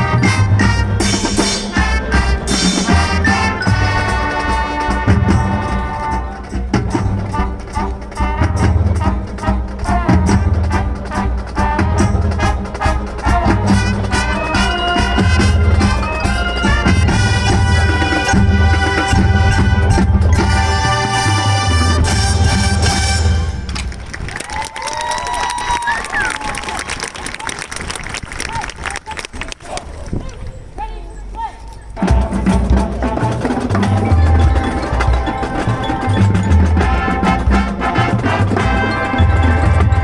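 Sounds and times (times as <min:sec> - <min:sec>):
steady drum beat: 0:00.0 - 0:23.7, 0:32.0 - 0:40.0
marching band playing: 0:00.0 - 0:27.1, 0:31.9 - 0:40.0.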